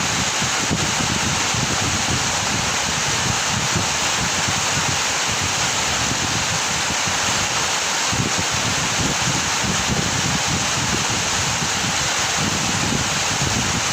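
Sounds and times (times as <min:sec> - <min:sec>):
heavy rain falling: 0:00.0 - 0:13.9.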